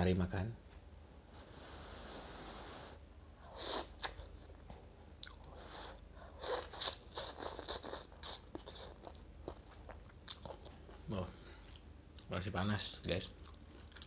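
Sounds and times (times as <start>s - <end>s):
soft breathy hiss: 1.2s - 4.2s
wet chewing: 3.6s - 12.3s, 13.4s - 14.0s.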